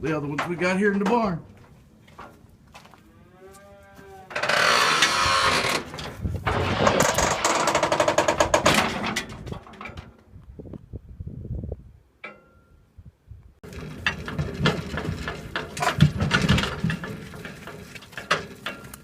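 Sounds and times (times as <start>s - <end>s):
metal trailer rattling and clanking: 0.1s - 1.4s, 4.3s - 10.3s, 13.6s - 19.0s.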